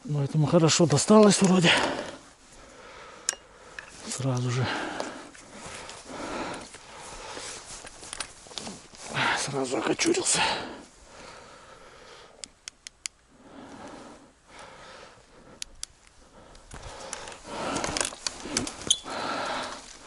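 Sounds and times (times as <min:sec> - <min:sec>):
rustling through dry vegetation: 0:00.3 - 0:12.0, 0:13.2 - 0:20.0
sharp clicks: 0:12.4 - 0:13.2.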